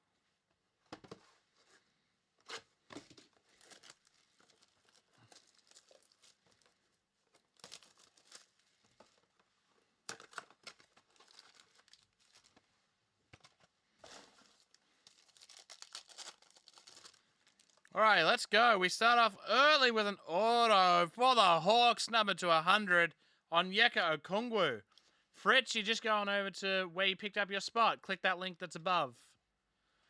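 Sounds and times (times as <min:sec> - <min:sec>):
wrappers tearing and crinkling: 0:02.5 - 0:09.3, 0:10.1 - 0:12.6, 0:14.0 - 0:17.9.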